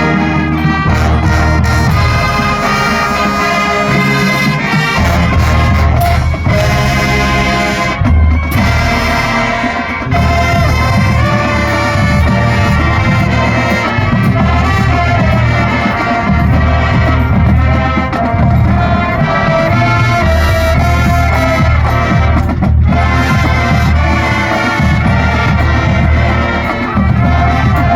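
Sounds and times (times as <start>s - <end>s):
low drum beat: 0.0s - 27.9s
marching band brass: 0.0s - 27.9s.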